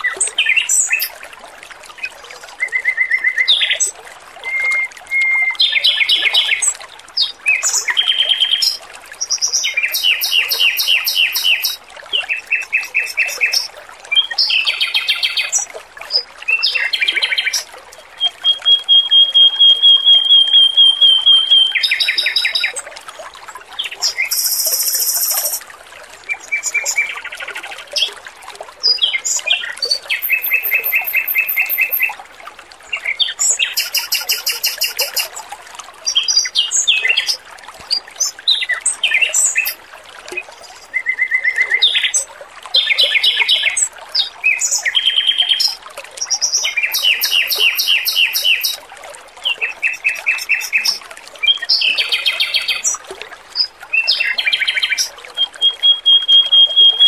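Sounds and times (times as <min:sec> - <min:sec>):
water trickling: 0:00.0 - 0:57.0
bird singing trilled phrases: 0:02.7 - 0:22.8, 0:23.8 - 0:25.6, 0:28.9 - 0:32.1, 0:33.0 - 0:35.3, 0:38.2 - 0:39.8, 0:42.8 - 0:48.8, 0:49.6 - 0:53.0, 0:53.6 - 0:57.0.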